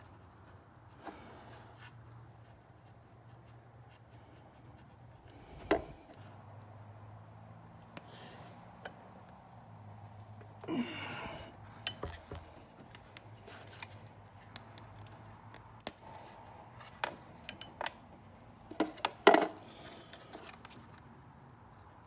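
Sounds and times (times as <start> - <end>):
hand tools and wire clicking: 10.4 - 21.7.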